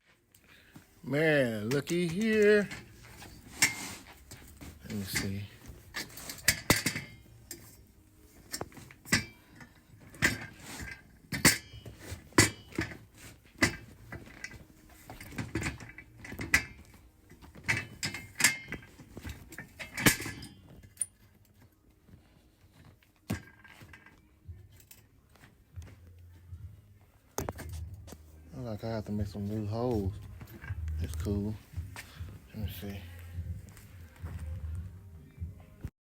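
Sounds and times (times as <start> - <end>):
metal parts clanking and rattling: 1.1 - 21.6, 22.8 - 25.5, 28.8 - 33.8.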